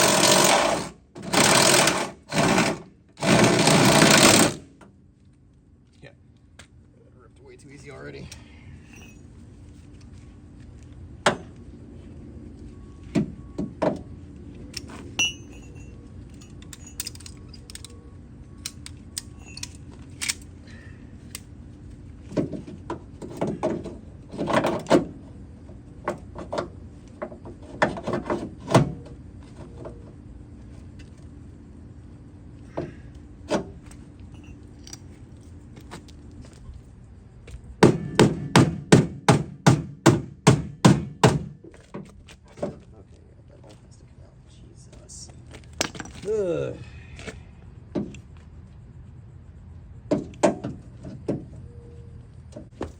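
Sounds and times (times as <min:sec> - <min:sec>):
hammer strikes on metal: 0:37.8 - 0:41.5
knocks and taps on sheet metal: 0:37.8 - 0:41.5.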